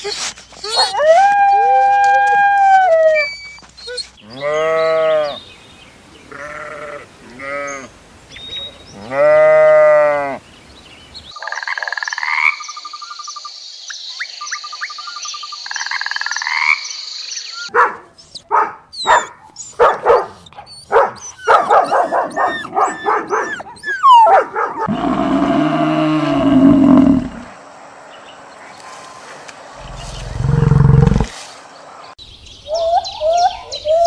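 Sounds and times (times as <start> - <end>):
farm animal bleating: 4.2 - 5.4, 6.3 - 7.9, 8.9 - 10.4
frogs croaking: 11.4 - 17.5, 21.5 - 27.6, 29.8 - 31.3.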